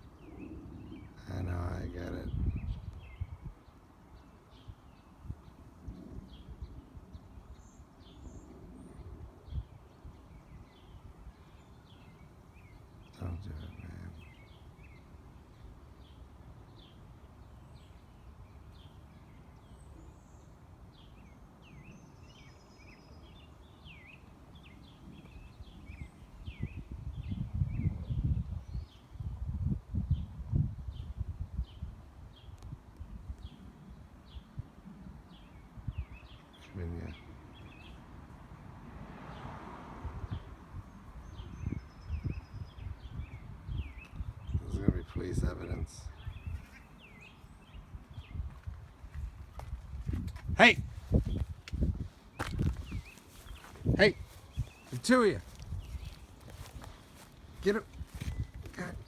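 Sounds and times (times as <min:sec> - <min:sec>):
wind rumble: 0:00.0 - 0:11.5, 0:24.3 - 0:36.4, 0:37.2 - 0:59.0
birds chirping: 0:00.0 - 0:29.3, 0:30.9 - 0:59.0
microphone handling noise: 0:48.1 - 0:59.0.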